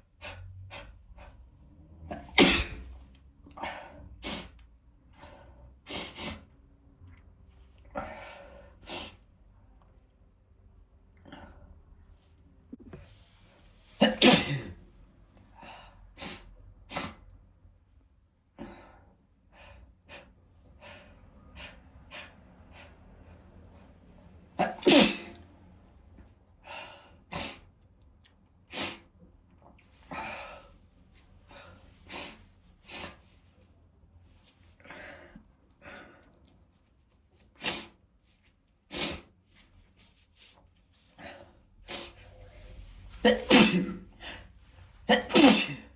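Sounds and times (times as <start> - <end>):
person sneezing: 2.1 - 3.0, 13.9 - 14.8, 24.6 - 25.5, 37.6 - 38.0, 41.2 - 44.5, 45.1 - 45.9.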